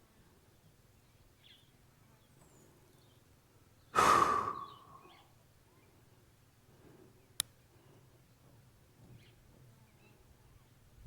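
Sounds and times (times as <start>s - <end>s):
faint bird chirps: 3.8s - 6.0s
person sighing loudly: 4.0s - 5.0s.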